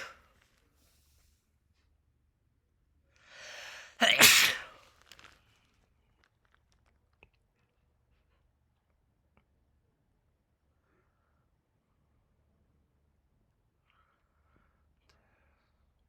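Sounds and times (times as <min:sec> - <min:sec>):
quick breath in: 0:03.2 - 0:04.5
person sneezing: 0:03.4 - 0:04.8.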